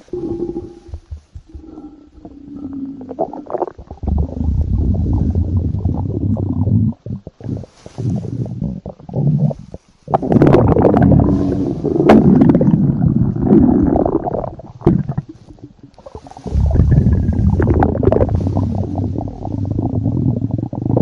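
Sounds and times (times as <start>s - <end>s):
stomach growling: 0.0s - 21.0s.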